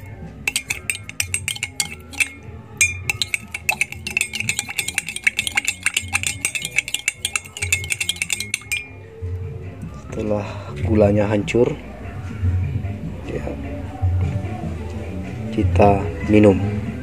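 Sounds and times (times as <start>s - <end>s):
spoon clinking in a glass: 0.0s - 9.1s.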